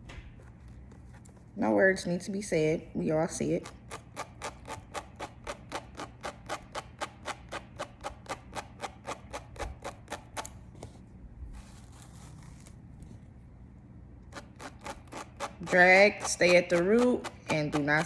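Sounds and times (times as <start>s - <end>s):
soft rustle: 10.7s - 13.5s
tweezers clicking: 14.8s - 18.0s.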